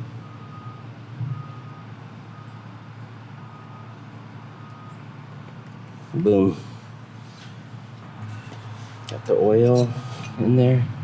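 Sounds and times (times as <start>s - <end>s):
vehicle backup alarm beeping: 0.0s - 5.4s.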